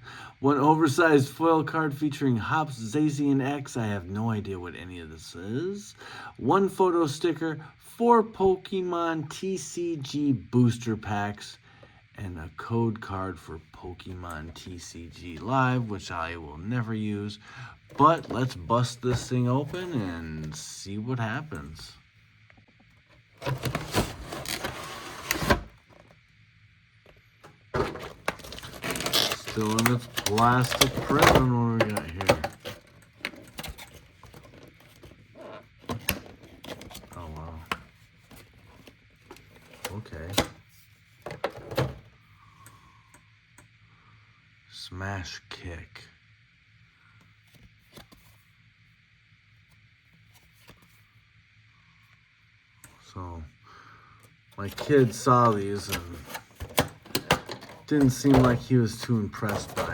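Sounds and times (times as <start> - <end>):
steady low hum: 3.5 - 59.9
cards and packaging handled: 17.9 - 20.6, 23.2 - 26.2, 27.1 - 42.1, 47.4 - 48.5, 54.6 - 59.9
plastic wrap crinkling and scraping: 23.4 - 26.2, 27.7 - 37.5.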